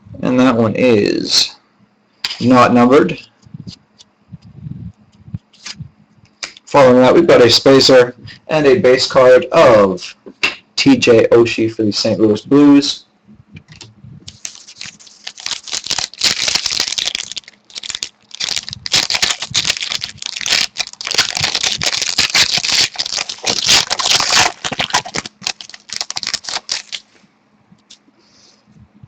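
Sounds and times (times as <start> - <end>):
cards and wrapper rustling: 14.3 - 27.1.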